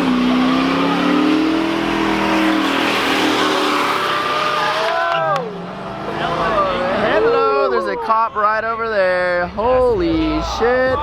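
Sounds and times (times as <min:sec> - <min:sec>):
car engine revving hard: 0:00.0 - 0:07.5.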